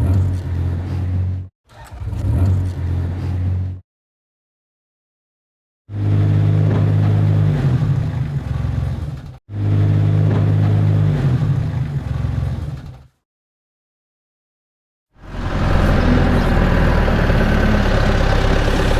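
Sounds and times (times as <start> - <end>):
tractor engine running: 15.2 - 18.9.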